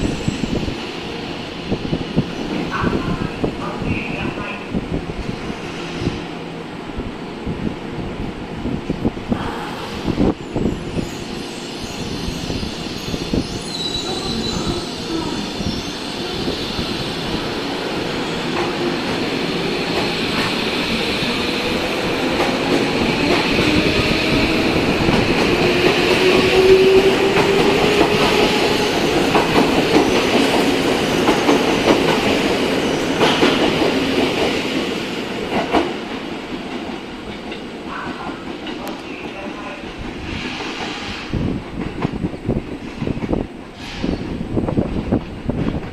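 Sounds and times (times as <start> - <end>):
train wheels clacking on rails: 18.4 - 44.4.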